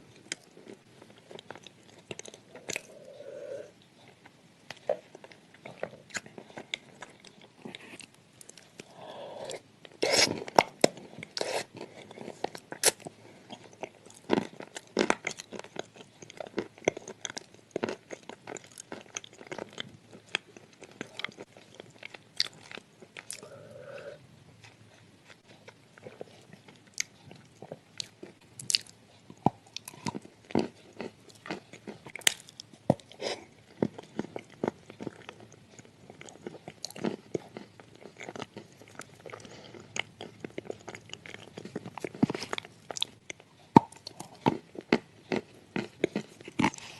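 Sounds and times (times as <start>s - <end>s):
person chewing clay: 0.1s - 46.9s.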